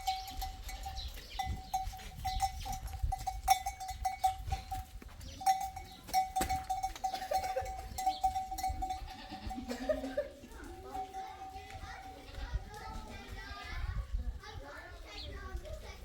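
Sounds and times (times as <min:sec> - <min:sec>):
livestock bells clanking: 0:00.0 - 0:13.2
scattered knocks and clatter: 0:01.8 - 0:08.6.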